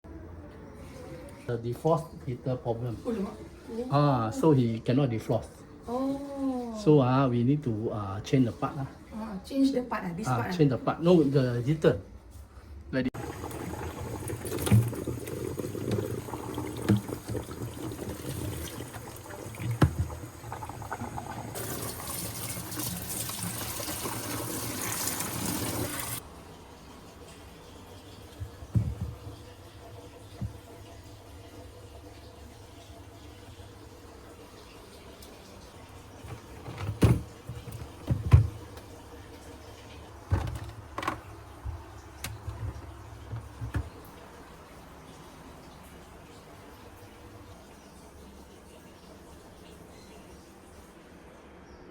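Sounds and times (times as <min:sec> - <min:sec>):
running water hissing: 0:13.1 - 0:26.2
knocks of refrigerator parts: 0:28.4 - 0:29.4, 0:36.3 - 0:38.7, 0:40.3 - 0:44.0.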